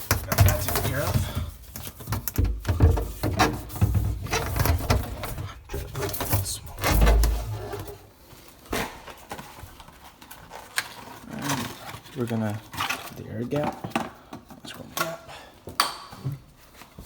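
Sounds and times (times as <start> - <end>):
knocks and clatter of handling: 0.0 - 15.2.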